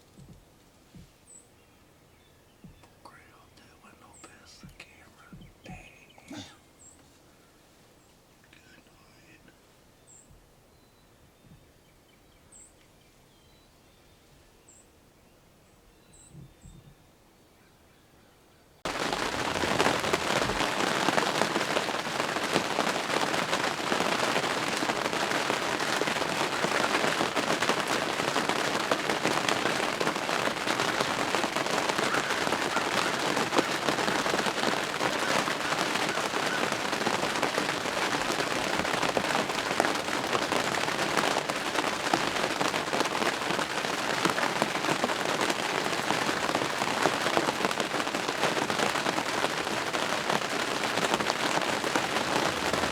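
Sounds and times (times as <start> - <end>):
steady rain patter: 2.6 - 9.8, 18.8 - 52.9.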